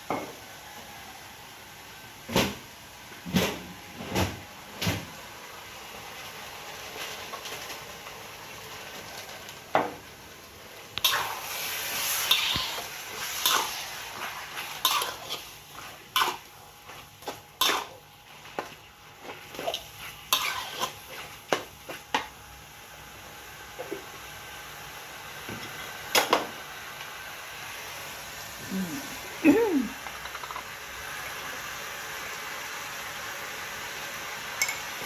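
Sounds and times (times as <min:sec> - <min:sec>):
food sizzling: 0:04.6 - 0:35.0
metal spatula scraping a pan: 0:12.1 - 0:18.0, 0:19.2 - 0:21.4.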